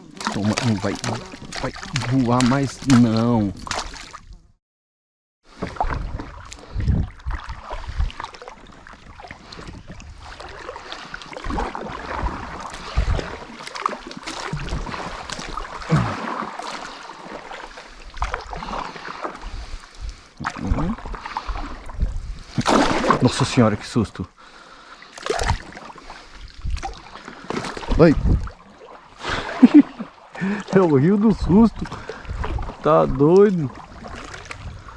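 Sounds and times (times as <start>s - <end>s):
water sloshing around a kayak: 0.0s - 4.6s, 5.4s - 34.9s
wind buffeting microphone: 5.8s - 8.3s, 11.4s - 13.5s, 19.5s - 22.7s, 27.8s - 28.5s, 31.2s - 34.9s.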